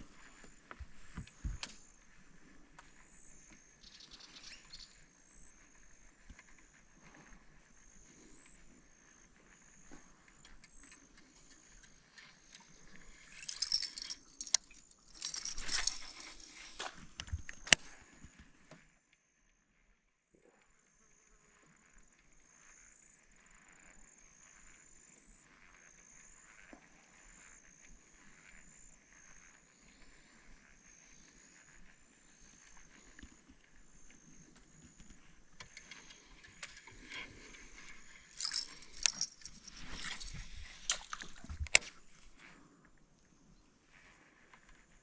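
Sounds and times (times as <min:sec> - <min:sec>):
insects chirping: 0:00.0 - 0:18.0, 0:27.3 - 0:44.9
clattering and rustling: 0:12.9 - 0:17.1, 0:35.6 - 0:41.9.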